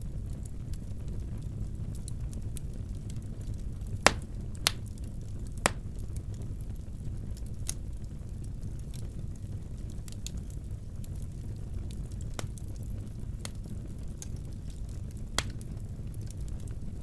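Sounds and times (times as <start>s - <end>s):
wood fire rumble: 0.0s - 17.0s
fire crackling: 0.1s - 17.0s
sharp pops of fire: 4.0s - 5.0s, 5.6s - 6.0s, 15.4s - 15.7s.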